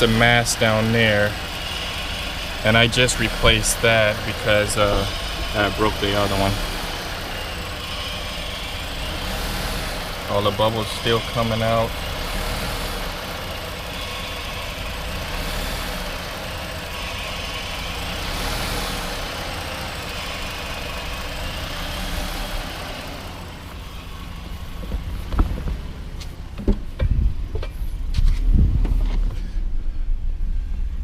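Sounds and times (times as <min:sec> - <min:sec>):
car engine idling unevenly: 0:00.0 - 0:31.0
sharp thumps: 0:24.6 - 0:29.4.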